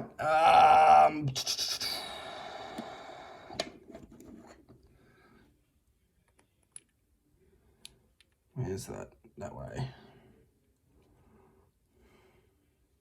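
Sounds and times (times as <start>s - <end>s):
tools scraping and rustling: 3.9s - 4.7s.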